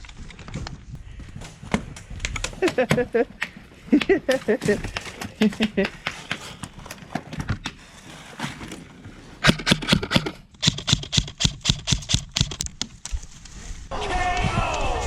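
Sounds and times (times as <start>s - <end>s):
airsoft rifle firing: 9.4s - 12.6s
sharp clicks: 9.4s - 13.2s.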